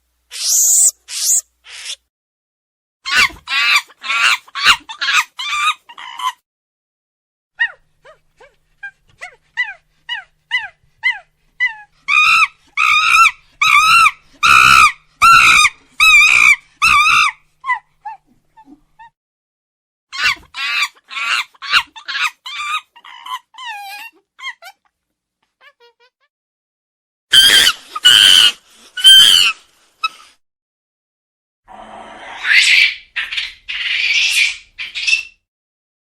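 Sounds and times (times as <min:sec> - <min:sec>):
monkey calling: 0:00.3 - 0:02.0, 0:09.6 - 0:17.8, 0:27.3 - 0:29.6.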